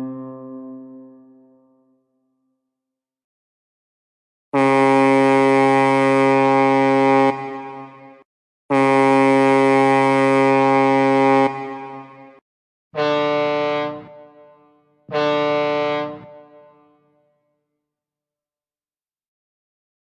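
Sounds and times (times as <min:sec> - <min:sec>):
ship's horn blasts: 0:04.6 - 0:08.1, 0:08.7 - 0:12.4, 0:13.0 - 0:17.0.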